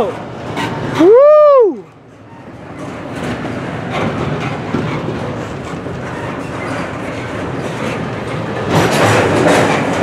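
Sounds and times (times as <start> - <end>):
wheel clacks: 0.0 - 1.2, 1.8 - 10.0
freight train rolling past: 0.0 - 10.0
steel wheels rattling on rails: 0.0 - 10.0.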